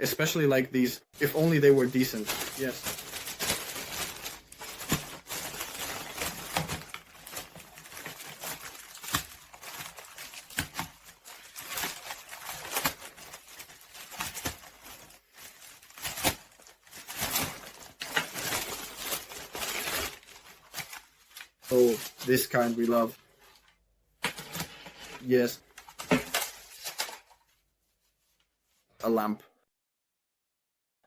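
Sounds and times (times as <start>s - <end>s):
packaging crinkling and tearing: 1.2s - 24.9s, 25.7s - 27.5s.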